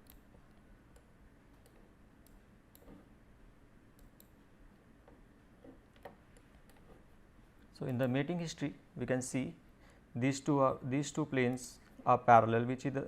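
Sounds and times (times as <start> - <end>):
computer mouse clicks: 0.0 - 3.1, 4.0 - 4.4
low room hum: 0.0 - 13.0.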